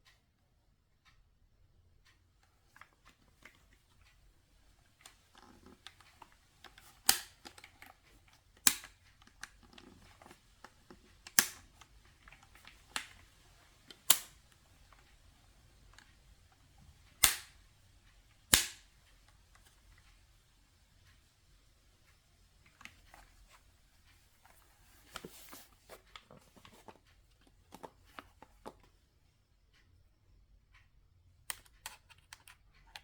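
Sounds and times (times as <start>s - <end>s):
sharp loud clicks: 17.2s - 17.6s, 18.5s - 18.9s
handling and rustling: 22.6s - 29.0s.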